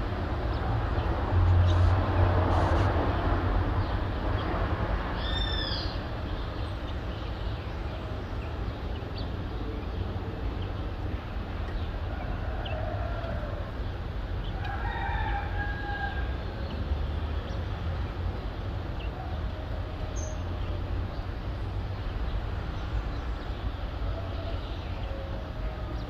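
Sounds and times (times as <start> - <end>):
low rumble of city traffic: 0.0 - 26.0
rooster crowing: 12.1 - 13.7, 14.6 - 16.4.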